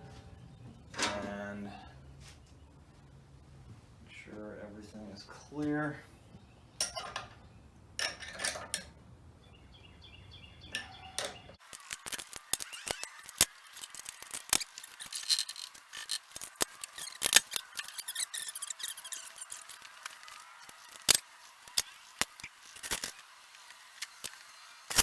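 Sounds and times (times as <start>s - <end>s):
squeaky ratcheting: 10.7s - 23.3s.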